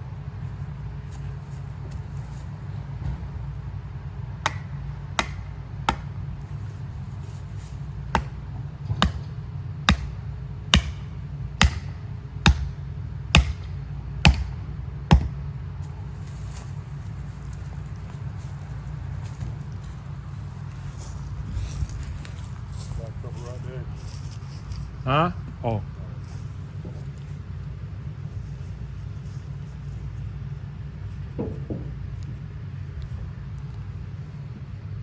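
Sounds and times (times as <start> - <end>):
steady low hum: 0.0 - 35.0
hammer striking: 3.0 - 15.6.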